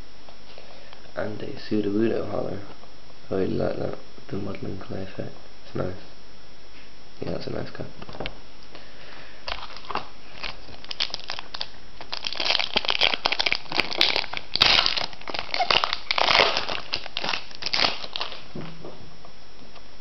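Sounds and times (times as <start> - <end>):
foil wrapper crinkling and tearing: 9.4 - 18.5.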